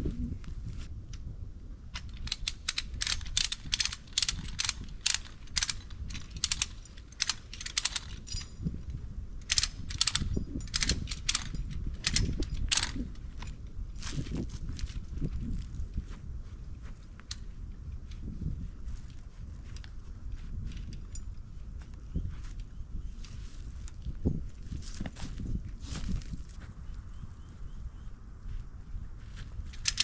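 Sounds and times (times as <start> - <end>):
metal rigging gear clinking: 2.0 - 13.6, 29.7 - 30.0.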